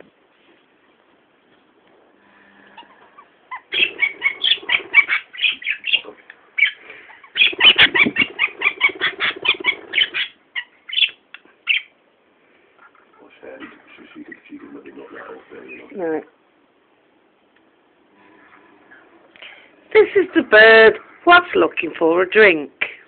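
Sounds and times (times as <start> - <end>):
budgerigar chirping: 2.8 - 12.0.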